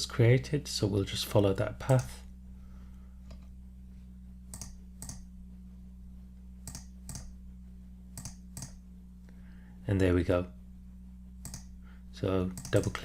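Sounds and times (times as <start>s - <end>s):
low electrical hum: 0.0s - 13.0s
computer mouse double-clicking: 4.5s - 5.2s, 6.7s - 7.3s, 8.2s - 8.8s, 11.4s - 11.7s, 12.6s - 12.9s.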